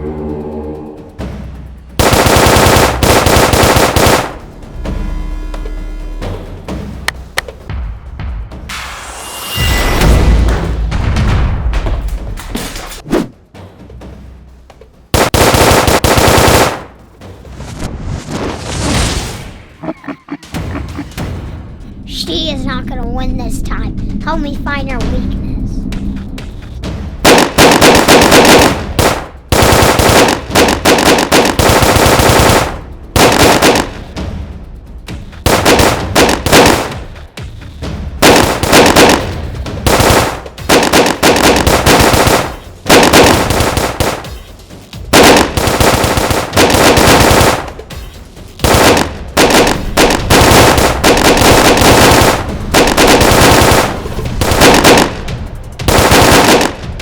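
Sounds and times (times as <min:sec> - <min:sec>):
machine-gun fire bursts: 0:02.0 - 0:04.5, 0:15.2 - 0:17.0, 0:27.2 - 0:34.2, 0:35.4 - 0:37.2, 0:38.2 - 0:44.4, 0:45.1 - 0:48.0, 0:48.6 - 0:57.0.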